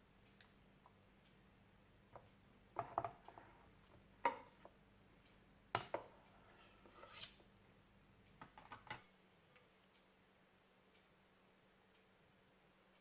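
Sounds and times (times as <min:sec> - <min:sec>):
utensil scraping: 0:06.4 - 0:07.4.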